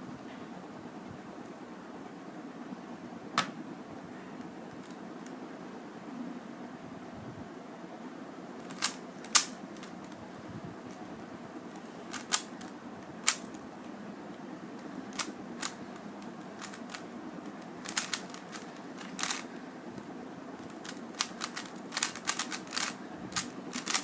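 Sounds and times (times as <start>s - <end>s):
steady low hum: 0.0s - 24.0s
rubik's cube clicking: 8.6s - 10.2s, 12.1s - 13.6s, 14.8s - 15.8s, 16.6s - 19.5s, 20.6s - 24.0s.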